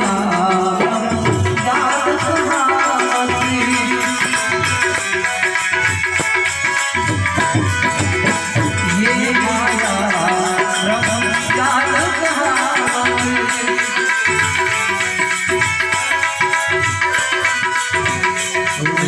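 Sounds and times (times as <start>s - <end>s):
person singing: 0.0s - 4.6s, 8.8s - 14.2s
harmonium reed chords: 0.0s - 19.0s
quick tabla rhythm: 0.0s - 19.0s.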